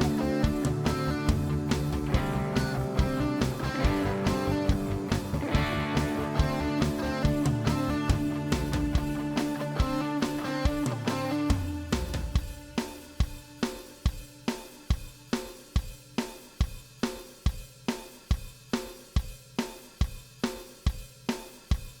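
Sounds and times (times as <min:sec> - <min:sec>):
sustained guitar chords: 0:00.0 - 0:12.1
rock drum beat: 0:00.0 - 0:22.0.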